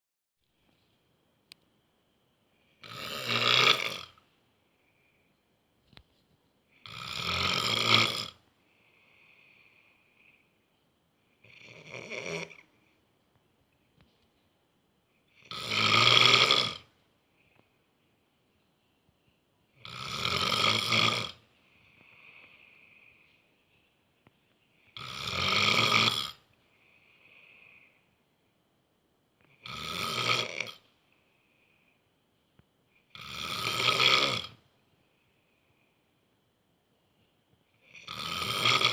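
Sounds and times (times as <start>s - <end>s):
man snoring heavily: 2.8s - 4.2s, 6.8s - 8.4s, 11.4s - 12.7s, 15.4s - 16.9s, 19.8s - 21.4s, 25.0s - 26.4s, 29.6s - 30.8s, 33.1s - 34.6s, 37.9s - 38.9s
faint high breath sound: 4.6s - 5.8s, 8.5s - 11.5s, 21.5s - 25.0s, 26.6s - 28.6s, 31.0s - 33.1s, 34.8s - 36.4s.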